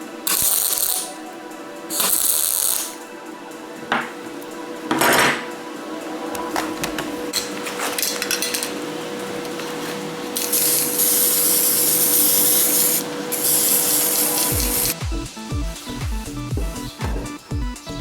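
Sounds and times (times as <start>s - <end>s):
long bursts of hissing: 10.4s - 16.4s
music with pulsing beat: 14.5s - 18.0s.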